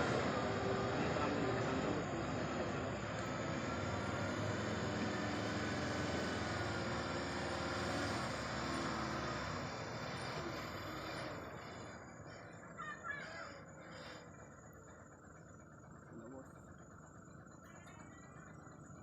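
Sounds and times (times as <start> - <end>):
heavy truck passing: 0.0 - 14.5.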